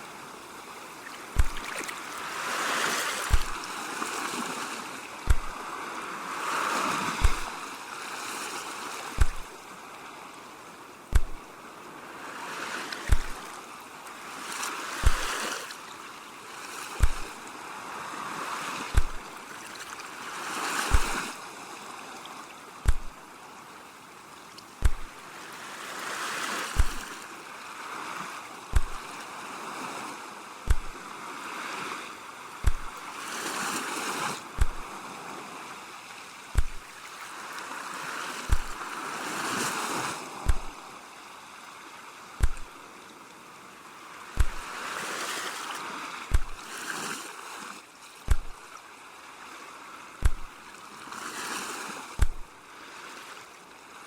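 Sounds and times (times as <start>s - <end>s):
sea waves washing in: 0.0s - 53.6s
deep thump: 1.4s - 1.6s, 3.3s - 3.6s, 5.3s - 5.6s, 7.2s - 7.6s, 9.2s - 9.5s, 11.1s - 11.4s, 13.1s - 13.4s, 15.0s - 15.3s, 17.0s - 17.3s, 19.0s - 19.3s, 20.9s - 21.2s, 22.9s - 23.2s, 24.8s - 25.2s, 26.8s - 27.1s, 28.7s - 29.0s, 30.7s - 31.0s, 32.6s - 33.0s, 34.6s - 34.9s, 36.6s - 36.9s, 38.5s - 38.8s, 40.4s - 40.8s, 42.4s - 42.7s, 44.4s - 44.7s, 46.3s - 46.6s, 48.3s - 48.6s, 50.2s - 50.6s, 52.2s - 52.5s.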